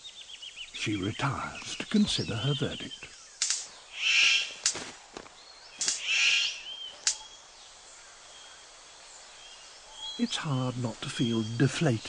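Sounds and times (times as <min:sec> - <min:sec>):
faint rainforest background: 0:00.0 - 0:12.0
harsh bird calls: 0:00.0 - 0:12.0
sharp click: 0:03.4 - 0:03.7, 0:05.8 - 0:06.0
thin bird chirps: 0:05.3 - 0:08.6.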